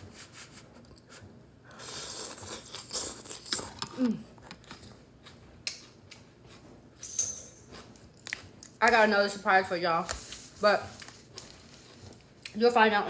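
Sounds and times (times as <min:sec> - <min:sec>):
chewing noodles: 0:00.8 - 0:06.8.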